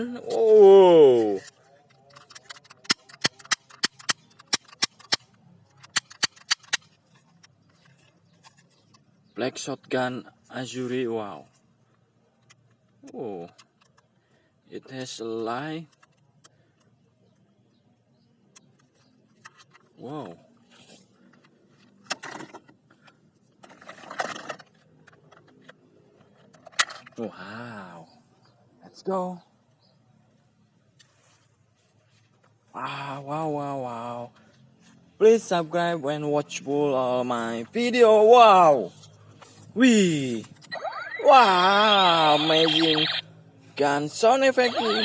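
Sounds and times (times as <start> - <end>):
toy gun cracks: 2.4 - 6.9.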